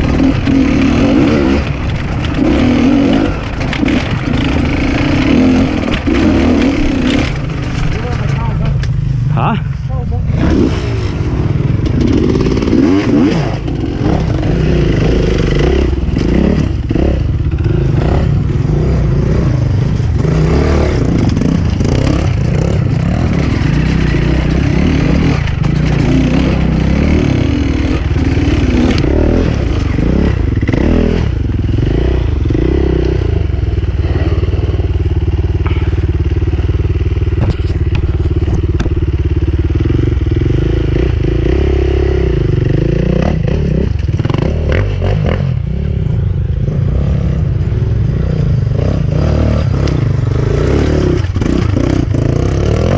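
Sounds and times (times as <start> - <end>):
bike knocks and rattles: 0.0 - 9.0, 35.2 - 41.7
dirt bike engine revving: 0.0 - 52.9.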